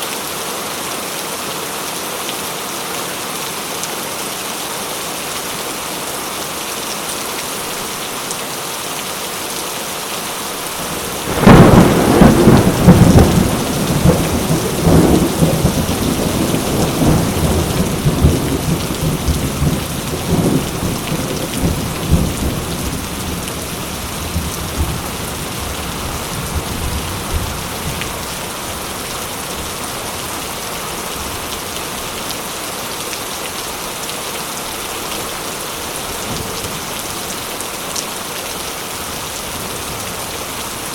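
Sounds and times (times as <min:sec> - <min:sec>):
heavy rain: 0:00.0 - 0:40.9
thunderclap rumbling: 0:10.8 - 0:28.0.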